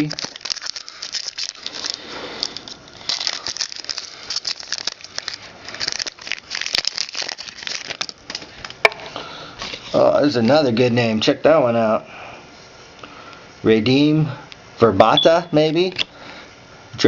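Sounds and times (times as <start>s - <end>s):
trading cards rustling and clicking: 0.0s - 8.8s.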